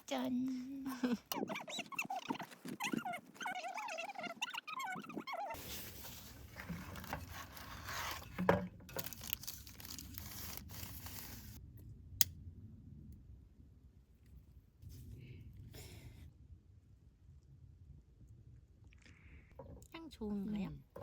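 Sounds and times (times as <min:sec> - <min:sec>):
rustling and scraping handling noise: 0:00.0 - 0:11.6.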